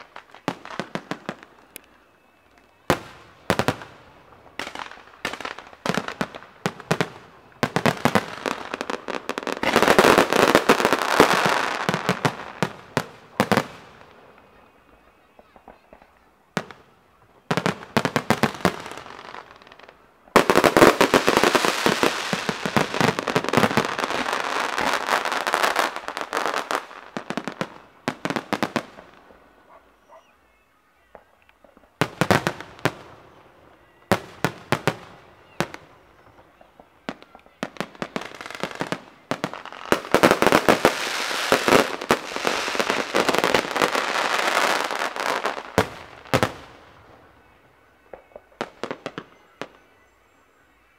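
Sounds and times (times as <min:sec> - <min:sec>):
fireworks crackling: 0:00.0 - 0:29.8, 0:31.1 - 0:47.4
firework bangs: 0:02.8 - 0:14.4, 0:17.4 - 0:29.4, 0:34.1 - 0:47.0.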